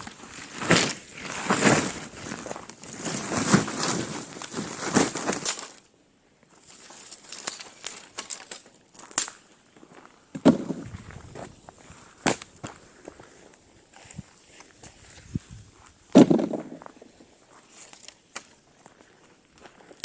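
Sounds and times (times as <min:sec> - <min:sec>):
dry leaves and twigs rustling: 0:00.0 - 0:05.9, 0:06.5 - 0:20.0
twigs snapping: 0:06.9 - 0:09.4.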